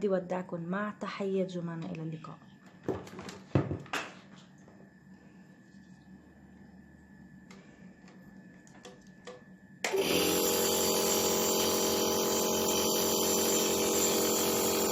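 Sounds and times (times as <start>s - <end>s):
nebulizer motor humming: 4.7s - 14.9s.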